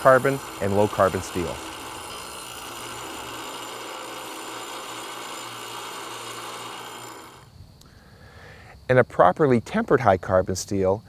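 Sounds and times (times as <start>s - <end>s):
steel on grinding wheel: 0.0s - 7.5s
low motor hum: 0.0s - 7.6s.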